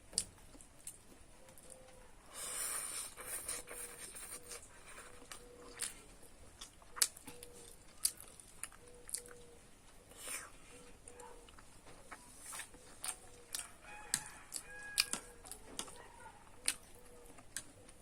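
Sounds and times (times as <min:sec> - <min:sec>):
person chewing: 0:00.1 - 0:18.0.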